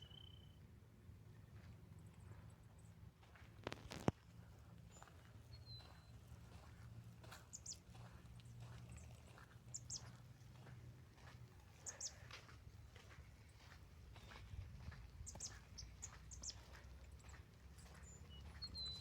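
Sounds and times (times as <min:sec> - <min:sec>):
faint bird chirps: 0:00.0 - 0:00.6, 0:17.9 - 0:19.0.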